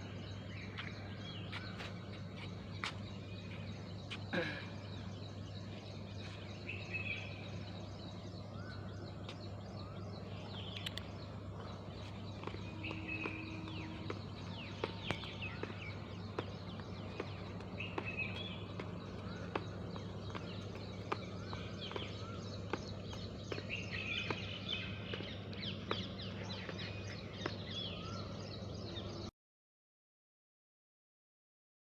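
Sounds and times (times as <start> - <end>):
small birds chirping: 0.0 - 29.3
steady low hum: 0.0 - 29.3
sharp clicks: 10.7 - 11.1.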